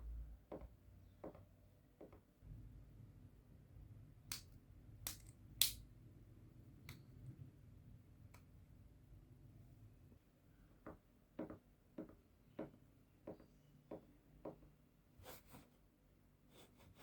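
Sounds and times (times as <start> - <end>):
soft knocks: 10.8 - 14.7.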